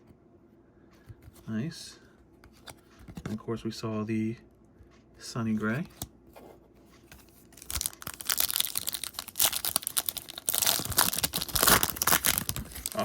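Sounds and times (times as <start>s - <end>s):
foil wrapper tearing and crinkling: 7.6s - 13.0s.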